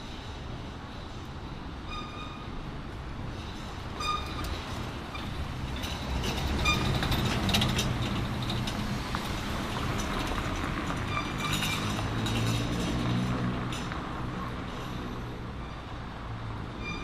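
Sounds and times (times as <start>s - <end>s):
traffic rumbling overhead: 0.0s - 17.0s
short high squeaks: 1.8s - 2.7s, 3.9s - 5.4s, 16.8s - 17.0s.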